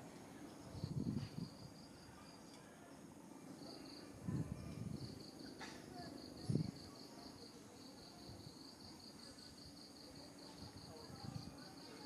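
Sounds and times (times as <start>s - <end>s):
insect chirping: 3.6s - 5.5s.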